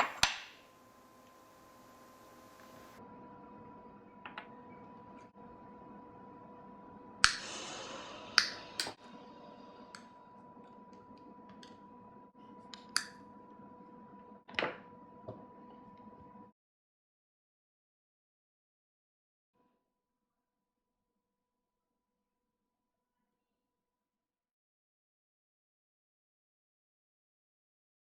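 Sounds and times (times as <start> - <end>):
steady electrical hum: 0.5 - 4.1.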